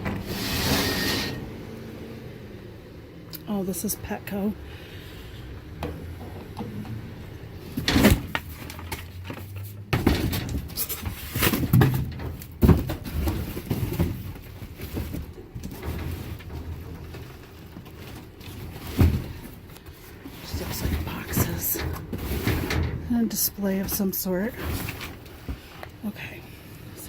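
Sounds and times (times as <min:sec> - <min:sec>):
rummaging through cardboard and trash: 0:03.4 - 0:27.0
sharp knocks and clatters: 0:07.7 - 0:23.1.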